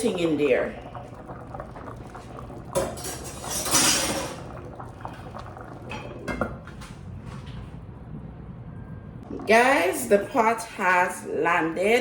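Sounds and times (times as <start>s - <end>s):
utensil scraping cooking pot: 1.9s - 4.8s.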